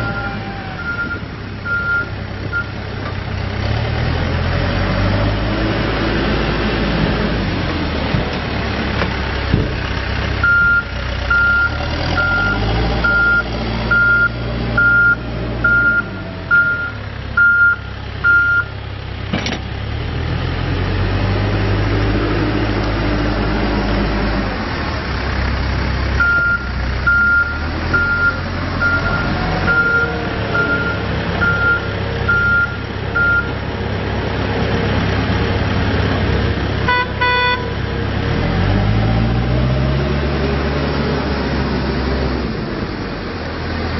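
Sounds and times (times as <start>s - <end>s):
diesel engine running: 0.0s - 43.9s
reverse alarm beeping: 10.5s - 18.7s, 26.2s - 33.5s.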